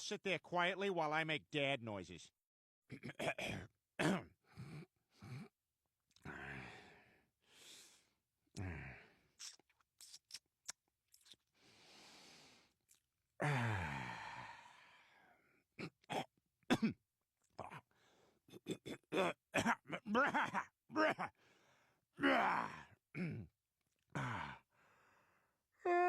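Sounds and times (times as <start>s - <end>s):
man grunting and groaning: 8.6s - 9.0s, 13.4s - 14.6s, 19.9s - 21.4s, 22.2s - 23.5s, 24.1s - 24.6s
mouth clicks: 9.4s - 11.4s.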